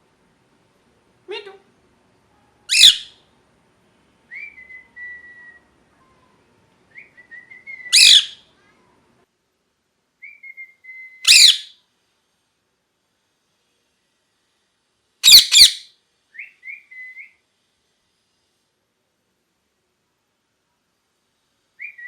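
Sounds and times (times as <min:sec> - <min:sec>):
parakeet screeching: 0:02.7 - 0:03.2, 0:07.9 - 0:08.4, 0:11.3 - 0:11.8, 0:15.2 - 0:15.9
parakeet whistling: 0:02.7 - 0:03.2, 0:07.3 - 0:08.4, 0:10.2 - 0:11.8, 0:15.2 - 0:17.3.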